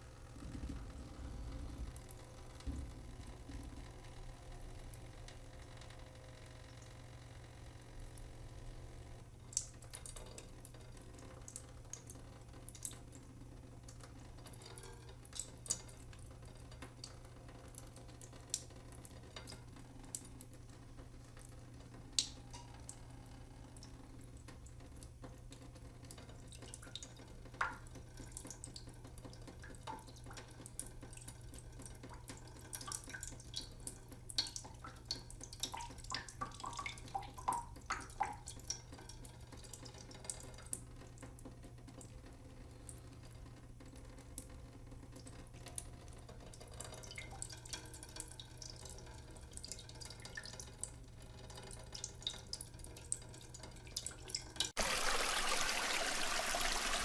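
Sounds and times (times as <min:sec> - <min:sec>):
water dripping: 0:09.4 - 0:42.1, 0:42.7 - 0:57.0.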